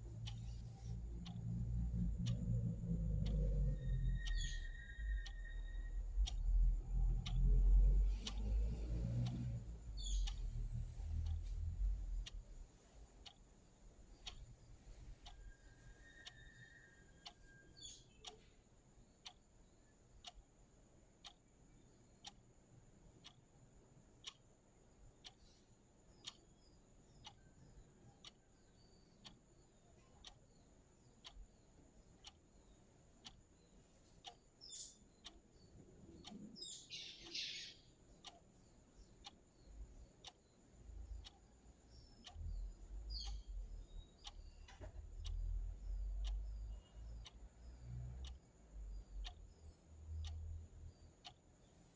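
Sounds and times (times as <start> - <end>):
clock ticking: 0.0 - 13.5, 14.1 - 15.5, 16.2 - 16.5, 17.2 - 18.4, 19.2 - 19.5, 20.2 - 20.5, 21.2 - 21.4, 22.2 - 22.4, 23.2 - 23.4, 24.2 - 24.5, 25.2 - 27.5, 28.1 - 51.9
birds chirping: 34.6 - 38.3.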